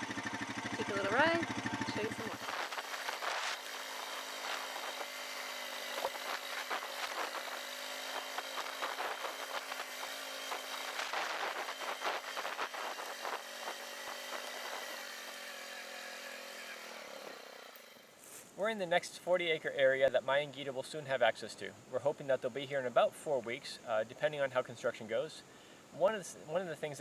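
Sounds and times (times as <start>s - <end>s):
vehicle engine running: 0.0s - 18.1s.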